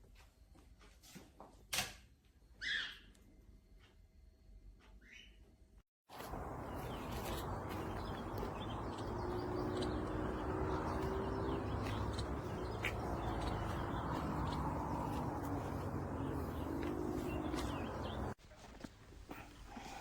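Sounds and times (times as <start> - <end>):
bird chirps: 6.1 - 18.4.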